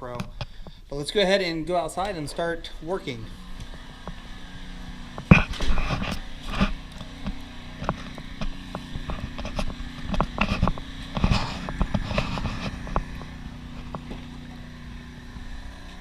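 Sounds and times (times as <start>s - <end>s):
steady low hum: 0.0s - 16.0s
footsteps: 1.9s - 16.0s
gear knocks and rustles: 5.1s - 14.4s.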